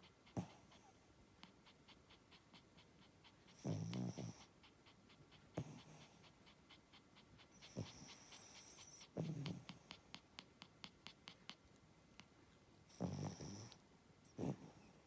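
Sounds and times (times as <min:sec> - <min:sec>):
dog snorting: 0:01.6 - 0:11.6, 0:12.9 - 0:13.8, 0:14.4 - 0:14.8
dog snoring: 0:03.5 - 0:04.5, 0:05.6 - 0:06.2, 0:07.6 - 0:10.0, 0:12.9 - 0:14.9.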